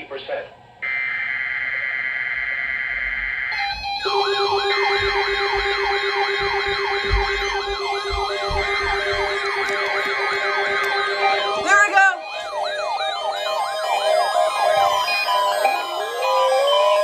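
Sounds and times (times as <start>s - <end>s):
alarm tone: 0.8s - 17.0s
electronic siren yelping: 0.8s - 17.0s.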